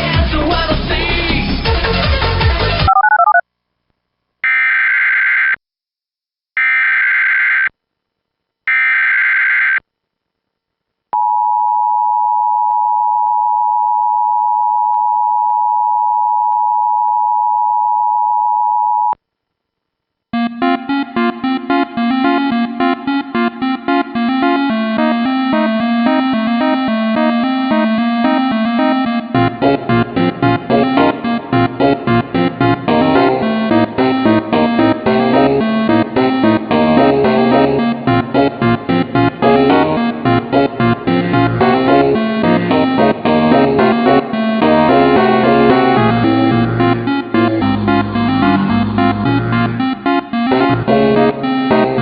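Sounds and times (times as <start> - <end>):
two-tone attention signal: 20.4 - 29.4
synthesizer music: 20.4 - 52.0.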